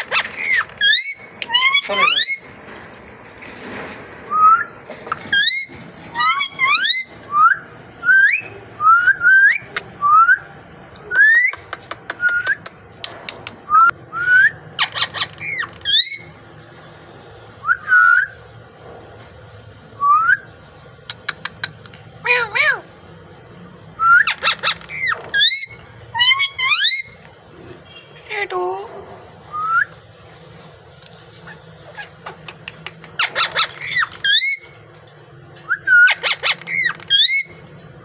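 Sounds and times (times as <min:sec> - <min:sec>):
parrot whistling: 0:35.7 - 0:37.6.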